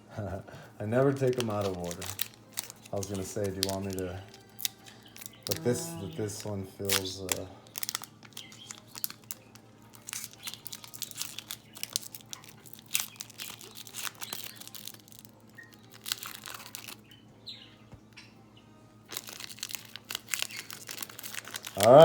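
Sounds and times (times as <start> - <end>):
cards crackling and clicking: 1.1 - 17.0, 19.1 - 22.0
card pack wrapper crinkling and tearing: 1.1 - 17.1, 19.1 - 22.0.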